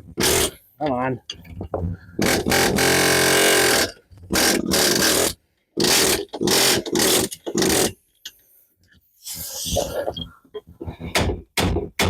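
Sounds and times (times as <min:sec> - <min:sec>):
impact wrench hammering: 0:02.2 - 0:07.9.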